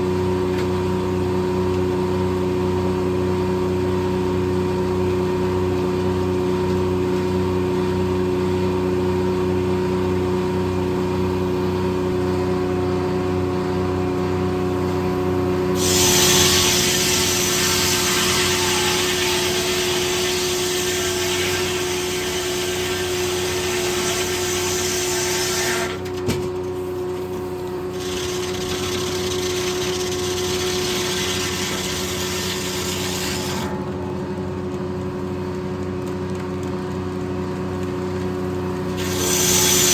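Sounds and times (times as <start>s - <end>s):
sawmill engine running: 0.0s - 39.9s
circular saw cutting log: 15.6s - 26.1s, 27.0s - 34.0s, 38.9s - 39.9s.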